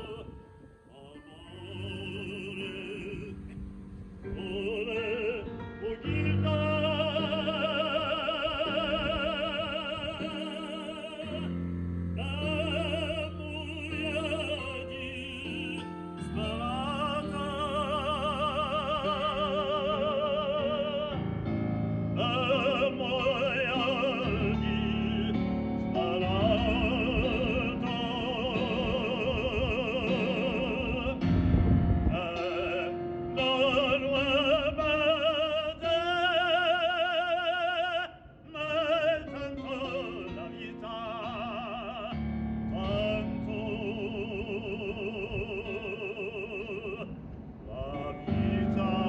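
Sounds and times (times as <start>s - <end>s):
operatic singing: 0.0s - 31.5s, 32.1s - 47.1s, 47.7s - 49.0s
sustained instrumental chords: 0.0s - 34.5s.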